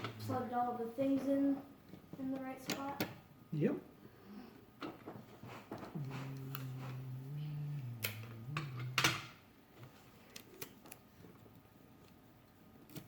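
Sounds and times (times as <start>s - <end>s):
person humming: 5.8s - 9.4s.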